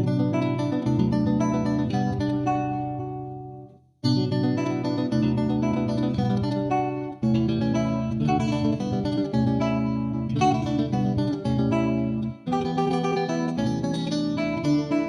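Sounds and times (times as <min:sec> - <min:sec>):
plucked guitar melody: 0:00.0 - 0:15.0
steady bass: 0:04.6 - 0:12.7.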